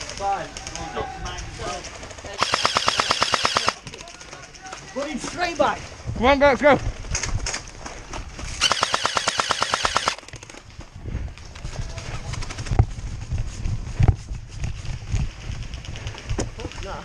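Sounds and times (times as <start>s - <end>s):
airsoft gun full-auto burst: 2.4s - 3.8s, 8.6s - 10.2s.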